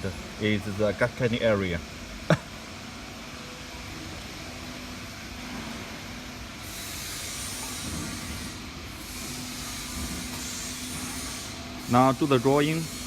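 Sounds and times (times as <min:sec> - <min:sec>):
machinery hum: 0:00.0 - 0:13.0
hiss: 0:06.6 - 0:13.0.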